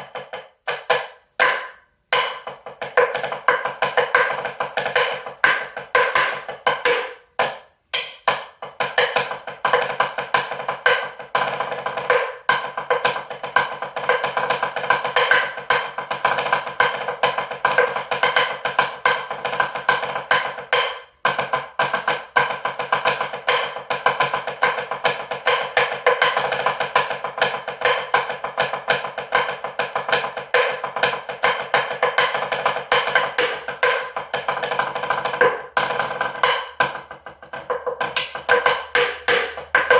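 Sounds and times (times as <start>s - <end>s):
rapid hand percussion: 0.0s - 39.9s.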